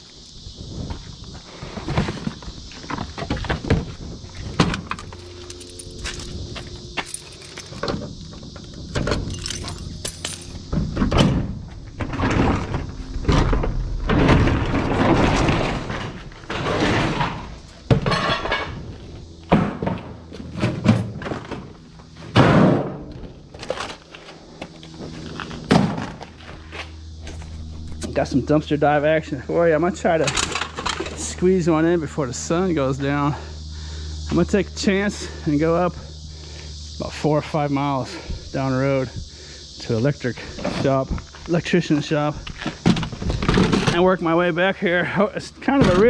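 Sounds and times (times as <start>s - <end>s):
scrap clattering and jangling: 4.9s - 10.8s.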